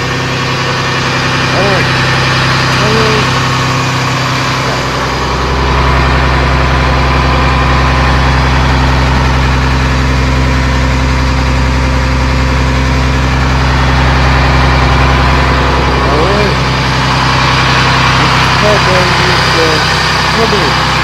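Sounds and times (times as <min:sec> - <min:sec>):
bus engine idling: 0:00.0 - 0:21.0.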